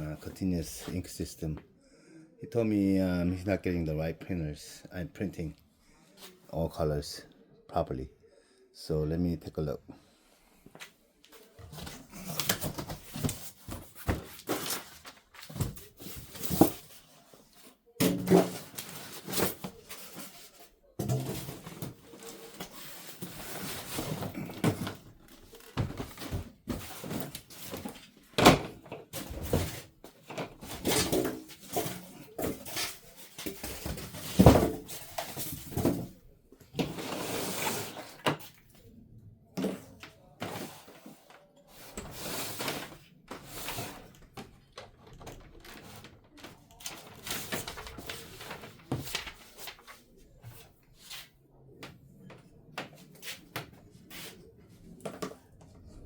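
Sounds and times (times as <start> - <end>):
scraping and rustling: 11.3 - 28.3.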